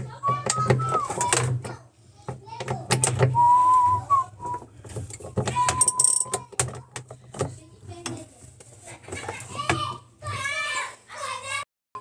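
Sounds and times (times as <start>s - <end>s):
high whistle-like tone: 3.4s - 4.6s, 5.6s - 6.4s
tools and parts clinking: 4.4s - 9.7s.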